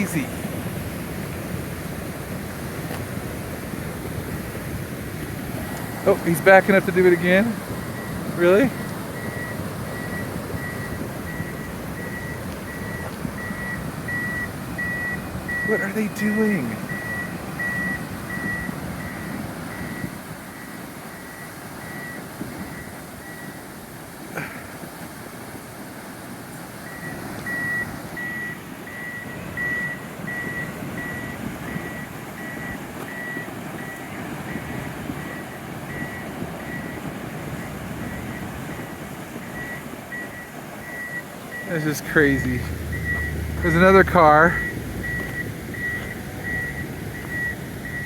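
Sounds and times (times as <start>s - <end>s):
floodwater rushing: 0.0s - 48.0s
truck reverse alarm beeping: 5.9s - 23.9s, 26.8s - 48.0s.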